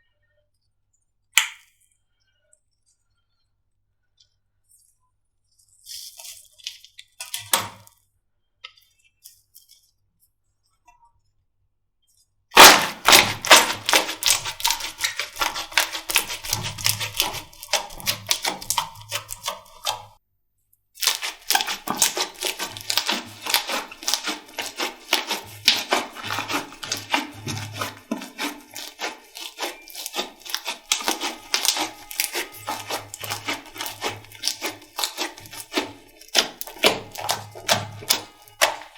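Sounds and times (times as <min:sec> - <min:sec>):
slime crackling when squished: 0:12.6 - 0:20.2, 0:21.0 - 0:38.9.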